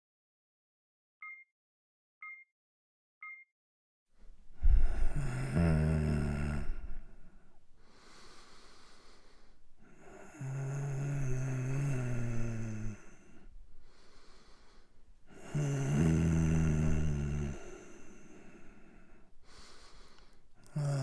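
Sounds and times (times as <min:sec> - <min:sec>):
short electronic beeps: 0:01.2 - 0:01.5, 0:02.2 - 0:02.5, 0:03.2 - 0:03.5
man snoring heavily: 0:04.7 - 0:07.2, 0:07.9 - 0:21.0.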